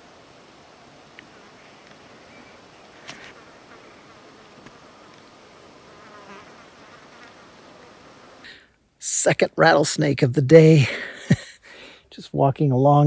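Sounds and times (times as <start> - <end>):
insect buzzing faintly: 0.0 - 8.8
outdoor hiss: 0.0 - 13.0.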